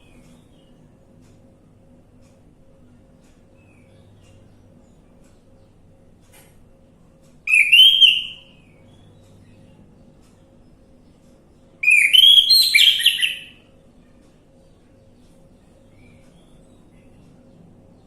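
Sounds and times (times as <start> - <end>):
thrush singing whistled phrases: 7.5 - 8.5, 11.8 - 13.6.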